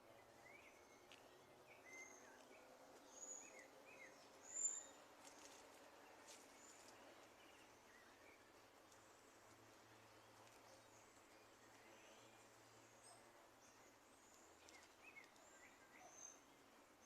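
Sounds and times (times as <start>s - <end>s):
faint background hiss: 0.0s - 17.0s
small birds chirping and whistling: 0.2s - 2.5s.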